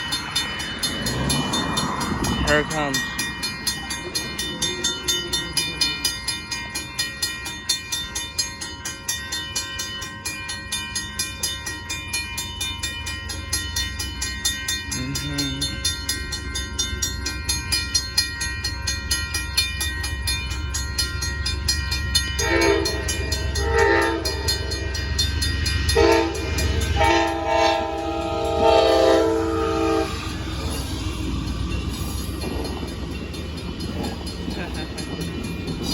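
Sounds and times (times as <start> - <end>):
rapid steady ringing: 0.0 - 35.9
train rumbling: 0.0 - 35.9
locomotive horn blasts: 22.4 - 24.8, 25.9 - 30.3.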